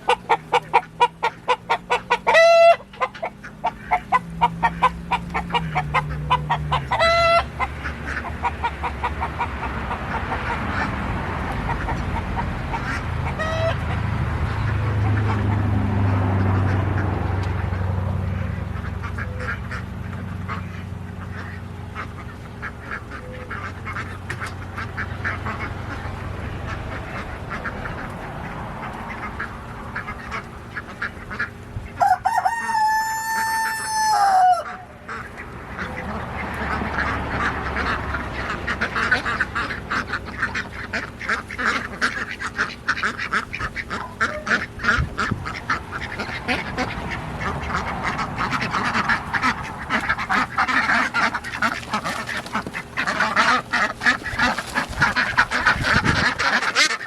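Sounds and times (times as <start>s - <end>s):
ducks quacking: 0.0s - 57.0s
rooster crowing: 2.1s - 2.9s, 3.9s - 7.7s, 13.2s - 13.8s, 32.0s - 35.0s.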